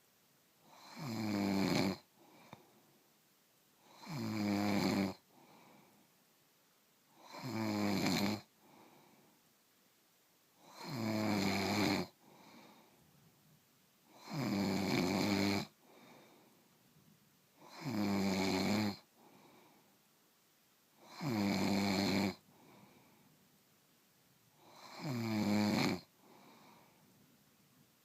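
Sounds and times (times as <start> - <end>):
rasping snores: 0.7 - 2.6, 3.8 - 5.2, 7.2 - 8.5, 10.6 - 12.6, 14.1 - 16.1, 17.6 - 19.4, 21.0 - 22.4, 24.6 - 26.7
soft breath: 2.0 - 3.2, 5.2 - 6.3, 8.4 - 9.6, 12.1 - 13.6, 15.7 - 17.7, 19.0 - 20.2, 22.4 - 23.7, 26.0 - 28.0.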